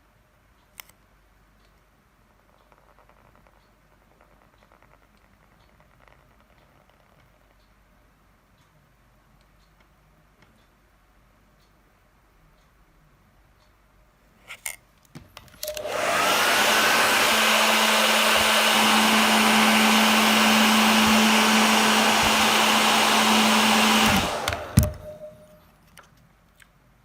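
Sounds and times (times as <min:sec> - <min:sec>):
clicks: 0:14.5 - 0:26.8
hot-air blower running: 0:15.6 - 0:25.5.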